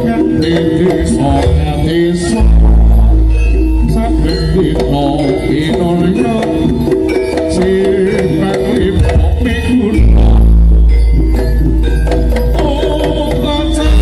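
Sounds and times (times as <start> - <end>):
gamelan music: 0.0 - 14.0
hand drum patterns: 0.0 - 14.0
metallophone melody: 0.0 - 14.0
deep gong stroke: 2.4 - 4.8.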